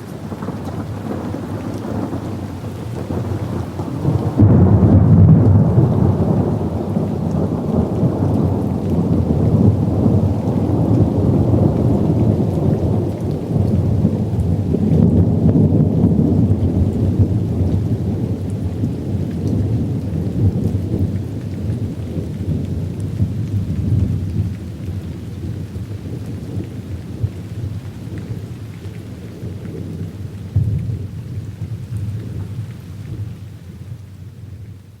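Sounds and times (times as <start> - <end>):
thunder rumbling: 0.0 - 34.8.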